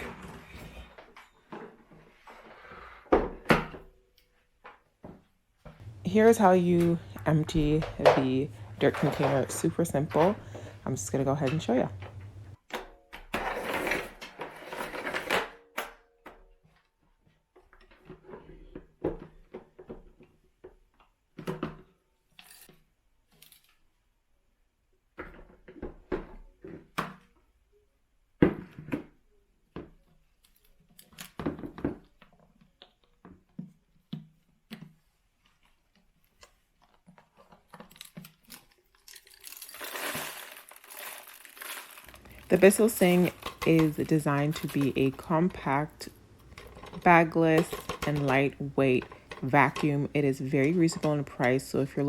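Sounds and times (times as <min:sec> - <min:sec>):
plastic clicks and rattles: 0:42.1 - 0:50.0.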